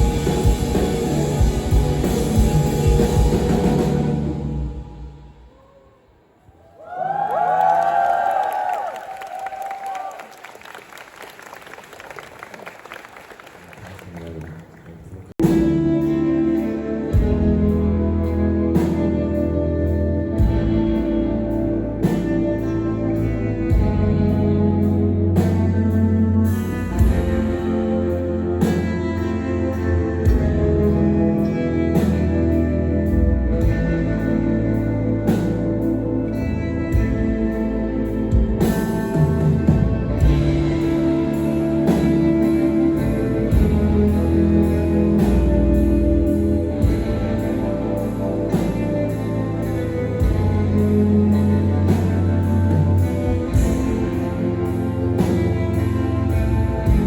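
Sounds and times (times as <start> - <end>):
heavy bass line: 0.0 - 5.5, 15.4 - 57.0
held guitar chords: 0.0 - 5.5, 15.4 - 57.0
drums and cymbal hits: 0.0 - 5.6, 38.3 - 55.9.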